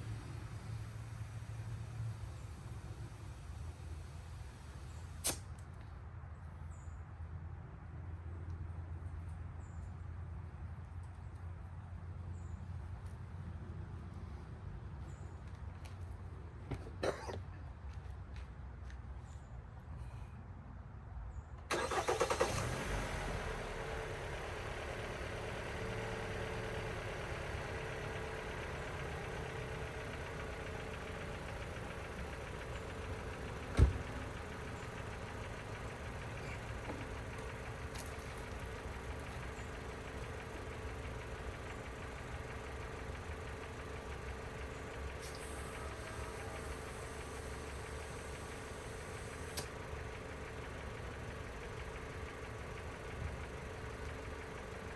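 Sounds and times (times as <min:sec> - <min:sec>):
engine idling: 0:00.0 - 0:05.4, 0:21.7 - 0:54.9.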